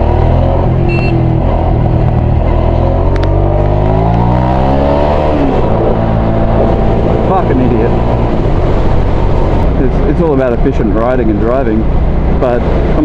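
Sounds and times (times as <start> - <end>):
short high beep: 0.9 - 1.2.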